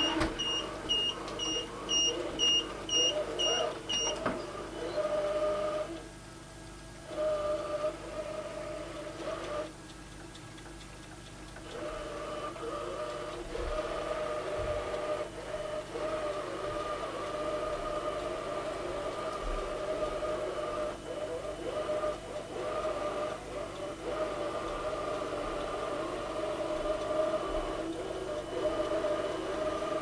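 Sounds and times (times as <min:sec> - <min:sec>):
robot vacuum motor whine: 0:12.0 - 0:30.0.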